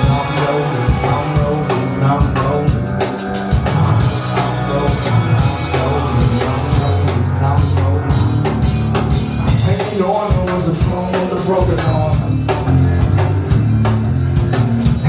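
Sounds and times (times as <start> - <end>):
deep bass line: 0.0 - 15.0
drum kit hits: 0.0 - 15.0.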